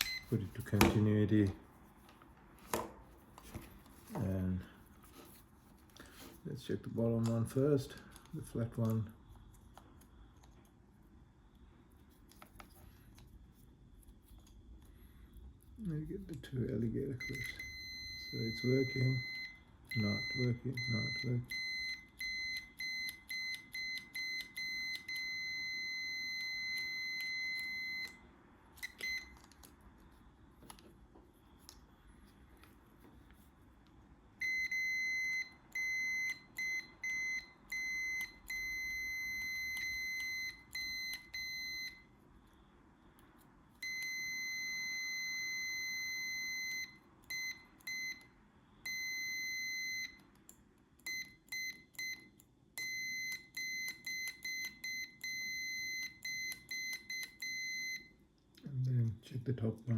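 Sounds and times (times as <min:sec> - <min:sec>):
multimeter continuity beeper: 0:17.2 - 0:28.2, 0:34.4 - 0:42.1, 0:43.8 - 0:50.2, 0:51.1 - 0:58.2.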